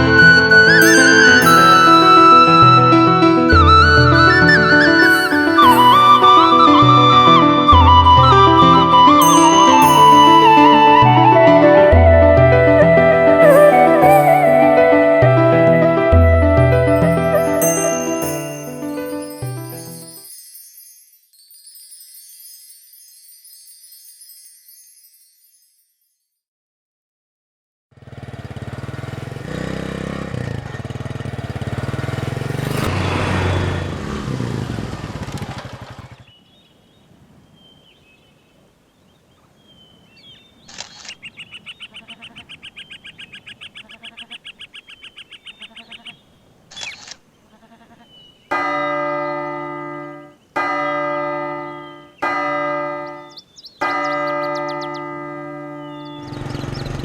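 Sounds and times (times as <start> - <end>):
bird-like chirps: 36.2 - 57.0
loud ringing tones: 48.5 - 57.0.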